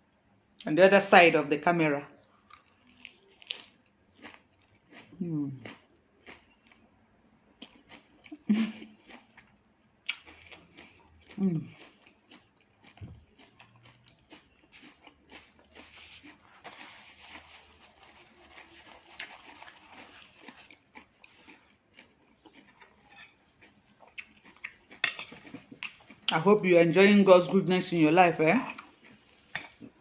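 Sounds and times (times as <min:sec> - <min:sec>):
lettuce crunching while chewing: 0:02.3 - 0:06.8, 0:07.6 - 0:26.6.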